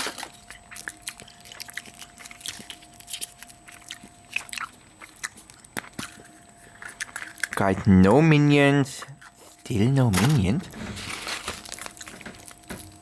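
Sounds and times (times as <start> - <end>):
chewing and crunching chocolate: 0.0 - 13.0.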